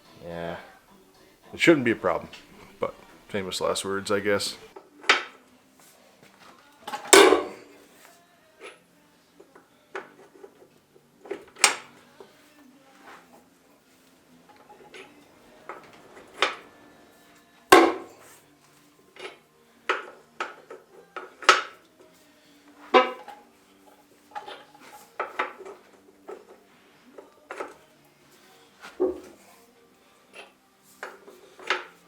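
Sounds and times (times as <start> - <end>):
hand tools clanking on metal: 6.9 - 7.8, 14.5 - 16.8, 17.7 - 18.3, 19.1 - 21.8, 22.8 - 23.5, 24.3 - 26.6, 27.5 - 27.8, 30.3 - 32.0.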